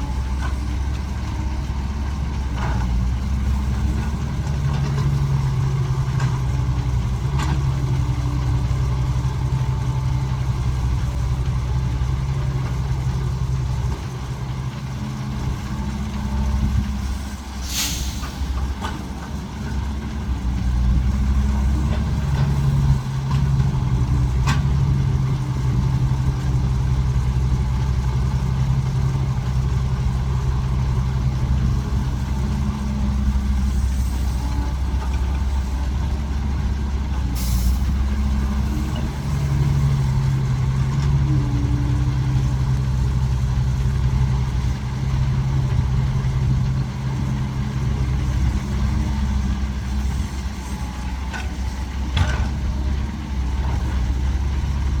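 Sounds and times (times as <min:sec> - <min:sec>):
excavator diesel engine running: 0:00.0 - 0:55.0
short hiss: 0:17.6 - 0:18.6
light metal clanks: 0:50.6 - 0:53.0.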